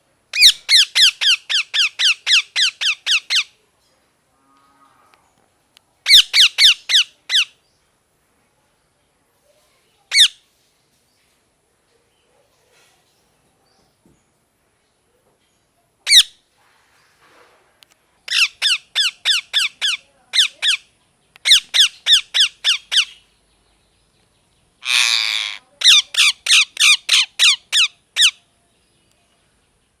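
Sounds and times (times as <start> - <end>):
parrot squawking: 0.4 - 3.5, 6.1 - 7.5, 10.1 - 10.4, 16.1 - 16.3, 18.3 - 20.8, 21.4 - 23.2, 24.8 - 28.4
parrot rasping screech: 24.8 - 27.9.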